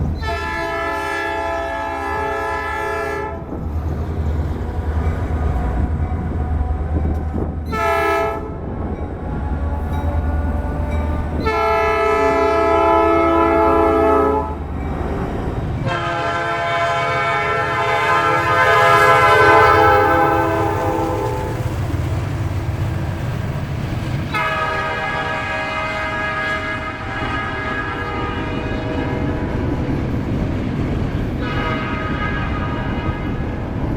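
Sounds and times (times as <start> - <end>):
locomotive air horn blasts: 0.2 - 3.5, 5.5 - 8.8, 9.7 - 14.6, 15.8 - 21.6, 24.3 - 29.5, 31.4 - 33.4.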